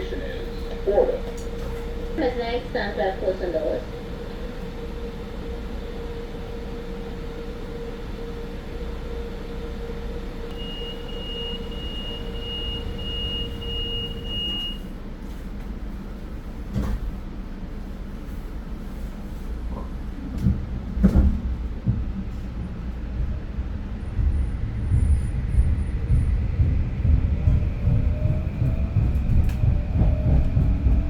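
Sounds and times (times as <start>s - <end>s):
train humming: 0.0s - 31.0s
train doors thudding shut: 19.8s - 22.2s.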